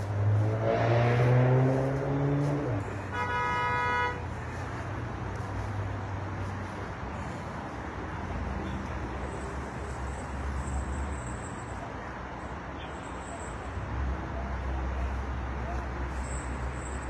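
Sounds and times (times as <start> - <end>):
heavy vehicle engine: 0.0 - 17.0
traffic passing: 0.0 - 17.0
car horn honk: 3.0 - 4.3.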